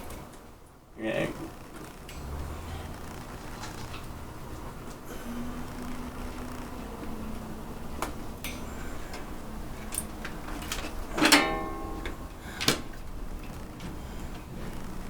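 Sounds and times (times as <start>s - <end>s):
clicks and knocks of parts: 8.0s - 14.0s
loud metallic clank: 11.1s - 12.9s.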